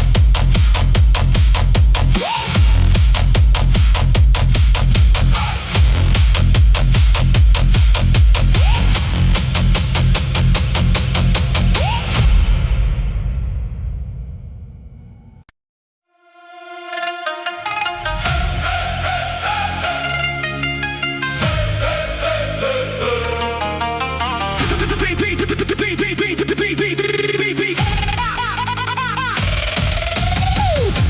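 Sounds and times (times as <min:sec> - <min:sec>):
kick drum pounding a beat: 0:00.0 - 0:12.8, 0:29.4 - 0:31.0
heavy bass line: 0:00.0 - 0:13.1, 0:18.1 - 0:28.4.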